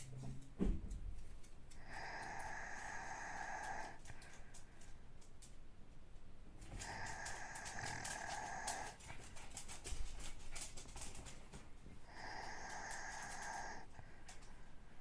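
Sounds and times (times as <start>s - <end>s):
low rattling snore: 1.8s - 4.3s, 6.7s - 9.0s, 12.1s - 13.9s
whistling wheezy breath: 1.8s - 4.3s, 12.1s - 14.1s.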